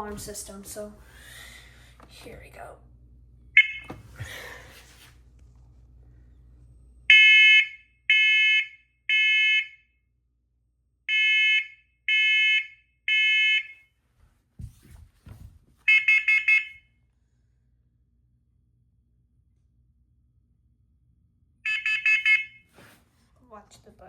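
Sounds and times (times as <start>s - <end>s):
smoke alarm beeps: 3.6s - 4.0s, 7.1s - 9.8s, 11.1s - 13.9s, 15.9s - 16.8s, 21.7s - 22.7s.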